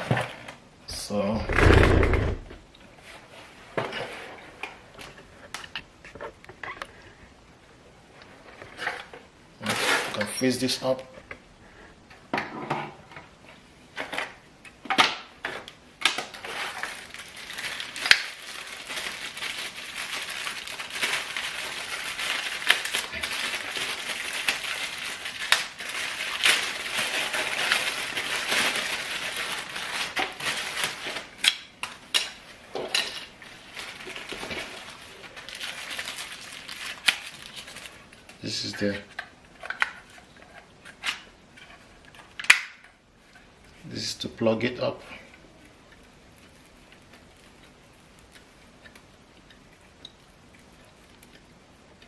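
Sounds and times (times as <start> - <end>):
packaging crinkling: 15.6 - 42.8.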